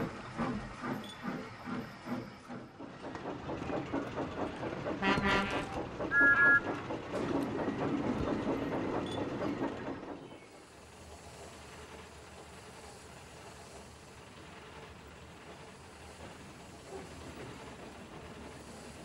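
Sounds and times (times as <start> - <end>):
steam locomotive wheels clattering: 0.0 - 19.0
locomotive whistle toots: 5.0 - 6.7.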